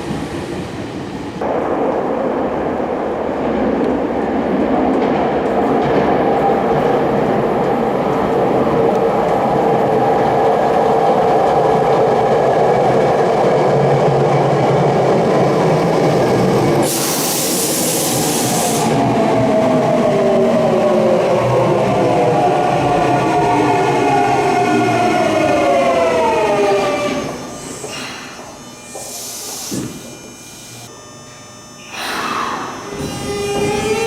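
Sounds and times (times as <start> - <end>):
train rolling noise: 0.0 - 30.9
electric train motors whining: 14.6 - 34.0
loud hiss of air: 16.8 - 19.0, 27.0 - 30.2, 31.8 - 33.4.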